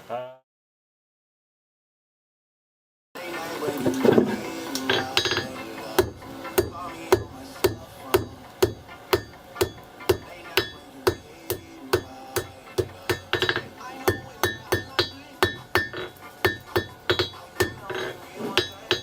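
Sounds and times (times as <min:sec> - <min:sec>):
hammer striking anvil: 0:04.9 - 0:19.0.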